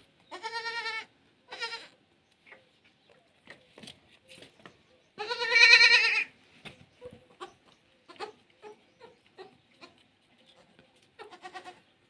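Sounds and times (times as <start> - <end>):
goat bleating: 0.3 - 2.0, 5.2 - 6.3, 7.3 - 10.0, 10.6 - 11.9.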